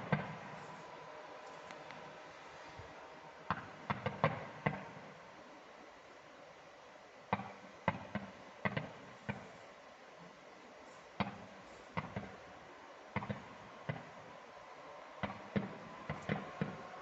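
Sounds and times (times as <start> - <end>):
fireworks banging: 0.0 - 0.7, 3.5 - 5.1, 13.1 - 14.2, 15.2 - 16.9.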